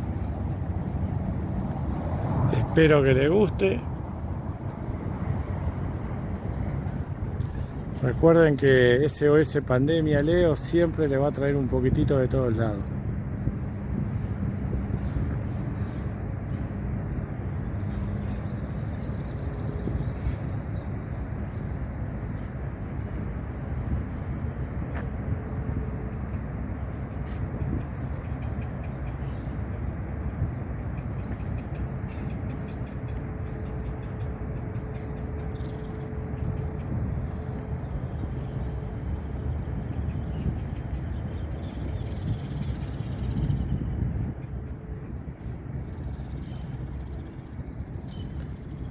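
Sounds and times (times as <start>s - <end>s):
low outdoor rumble: 0.0s - 48.9s.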